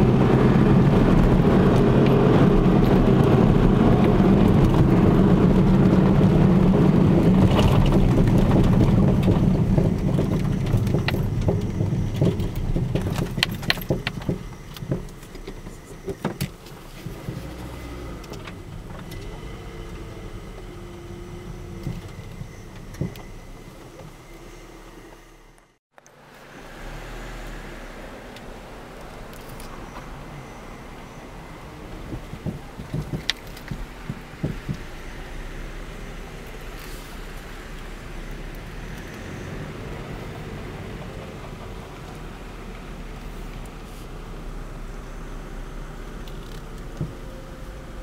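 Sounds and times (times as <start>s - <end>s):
suspension knocking and clicking: 0.0s - 24.2s, 31.9s - 35.7s, 37.8s - 43.8s, 46.1s - 47.4s
car road noise: 0.0s - 48.0s.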